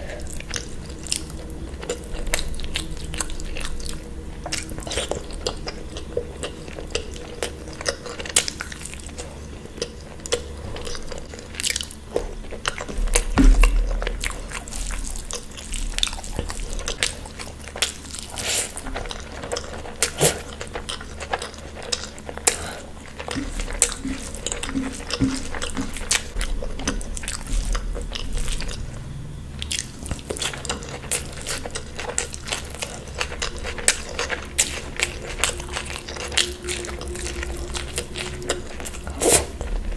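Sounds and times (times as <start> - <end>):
biting chewing and crunching food: 0.0 - 39.9
low thump: 13.0 - 14.4.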